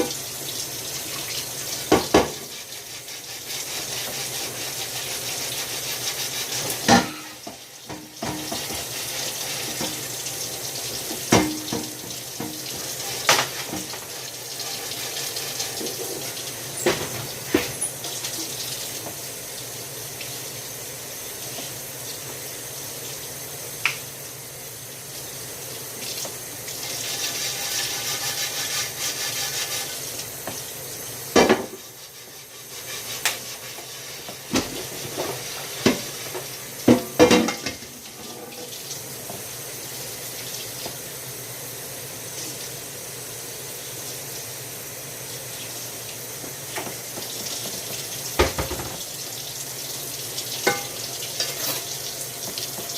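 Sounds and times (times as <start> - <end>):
tap water running into sink: 0.0 - 23.2, 25.1 - 41.3, 45.3 - 52.9
dishes knocking together: 48.4 - 49.0.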